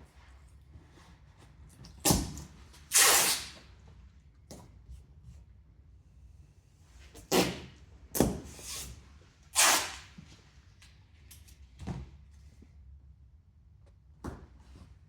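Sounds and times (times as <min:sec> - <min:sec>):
masking tape pulled off roll: 0:02.9 - 0:03.6, 0:07.3 - 0:07.7, 0:09.6 - 0:10.1.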